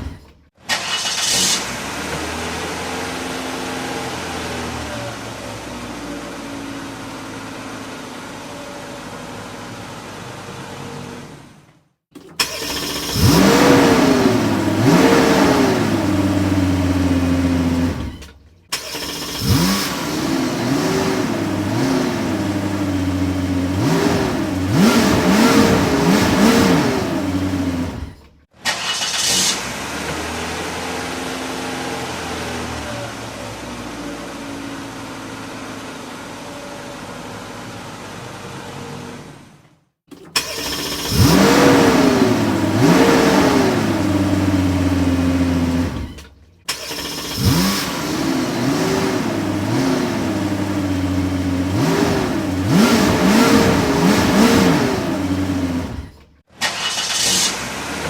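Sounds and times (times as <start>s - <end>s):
car engine revving: 12.2s - 35.8s, 40.3s - 58.0s.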